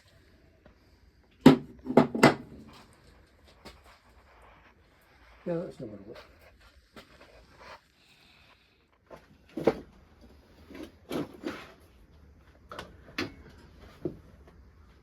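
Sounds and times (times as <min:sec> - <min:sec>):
hard objects knocking and clunking: 0:01.4 - 0:02.8.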